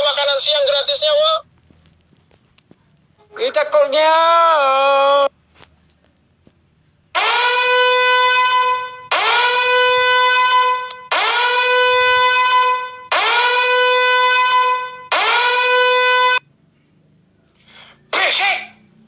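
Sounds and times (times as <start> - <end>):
horn-like tone blasts: 7.2 - 16.4.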